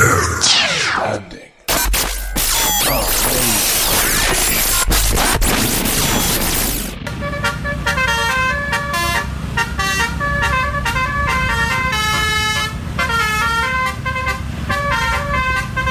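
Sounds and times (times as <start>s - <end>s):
burst of loud noise: 0.0s - 7.4s
multi-tone truck horn melody: 7.0s - 15.9s.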